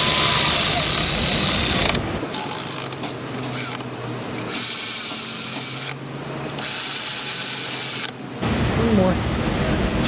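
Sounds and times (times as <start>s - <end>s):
power drill driving screws: 1.5s - 6.0s, 6.6s - 8.2s.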